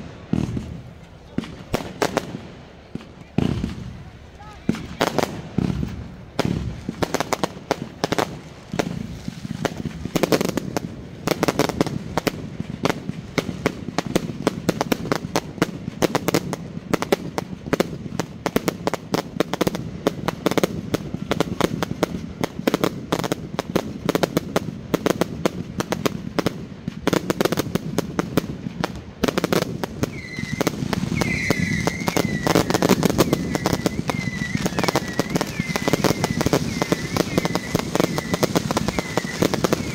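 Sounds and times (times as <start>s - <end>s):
fireworks banging and crackling: 0.0s - 39.9s
high wavering whistle: 30.1s - 39.9s.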